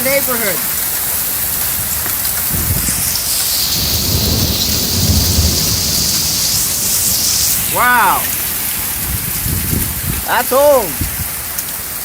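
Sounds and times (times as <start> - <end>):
heavy rain hissing: 0.0 - 12.0
low roll of thunder: 2.4 - 10.2.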